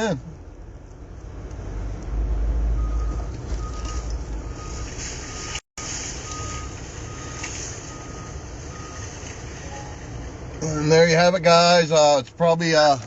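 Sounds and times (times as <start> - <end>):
reversing alarm beeping: 2.8 - 9.1, 9.7 - 10.0.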